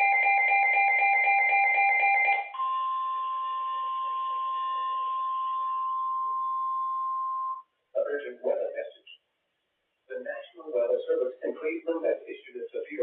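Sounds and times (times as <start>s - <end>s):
steady pure alarm tone: 0.0s - 7.7s.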